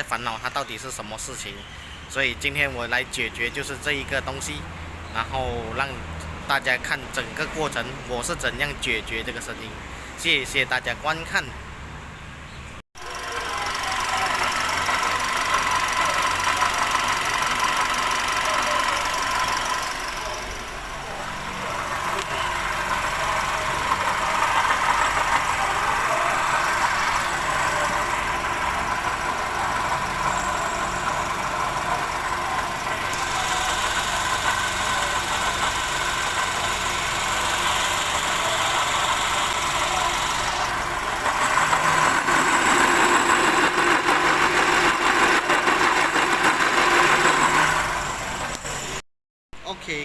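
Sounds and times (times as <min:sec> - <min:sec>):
car engine idling: 0:13.0 - 0:49.0
water pump noise: 0:13.0 - 0:49.0.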